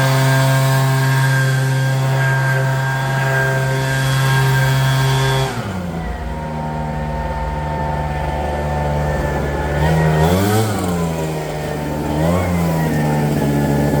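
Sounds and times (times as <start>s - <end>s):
small petrol engine revving: 0.0s - 14.0s.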